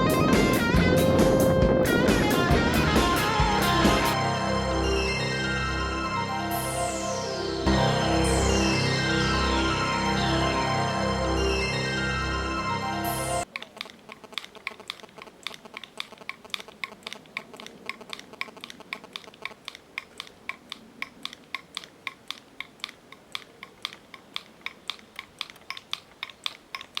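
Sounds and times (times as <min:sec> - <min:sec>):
music: 0:00.0 - 0:13.4
light sharp clicks: 0:13.5 - 0:27.0.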